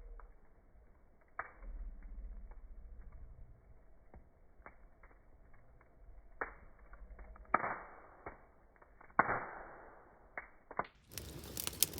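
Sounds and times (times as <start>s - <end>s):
wood fire crackling and popping: 0.0s - 11.9s
short hiss from fire: 11.0s - 11.9s.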